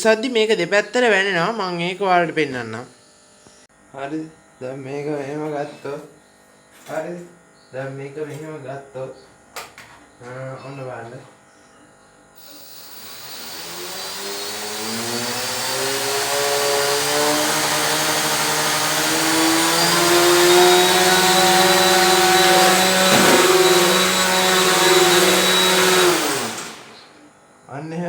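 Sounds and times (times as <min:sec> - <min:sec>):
helicopter motor and rotor whine: 0:12.9 - 0:17.3, 0:17.9 - 0:27.1.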